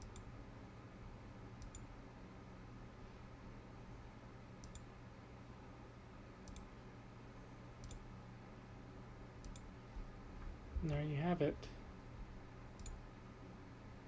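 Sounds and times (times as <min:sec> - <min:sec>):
faint steady low hum: 0:00.0 - 0:14.0
computer mouse double-clicks: 0:01.6 - 0:01.9, 0:04.6 - 0:04.9, 0:06.4 - 0:06.7, 0:07.8 - 0:08.0, 0:09.4 - 0:09.7, 0:12.8 - 0:13.0.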